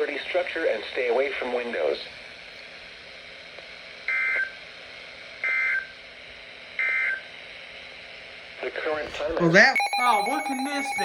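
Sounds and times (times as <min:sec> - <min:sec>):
faint radio hiss: 0:00.0 - 0:11.0
two-tone digital data screech: 0:09.7 - 0:11.0.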